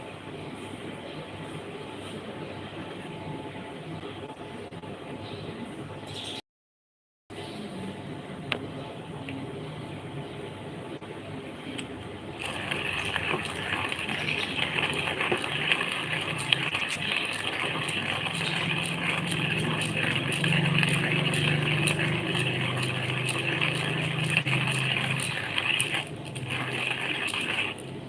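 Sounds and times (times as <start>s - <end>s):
coffee machine humming and hissing: 12.4s - 28.0s.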